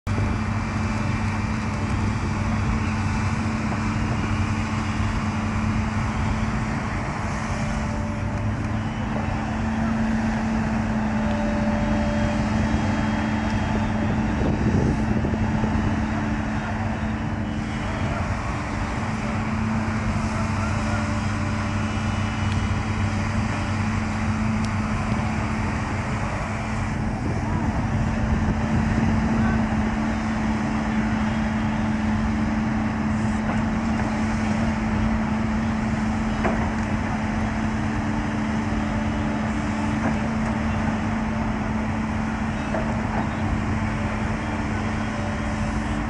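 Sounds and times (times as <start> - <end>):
diesel engine running: 0.0 - 46.0.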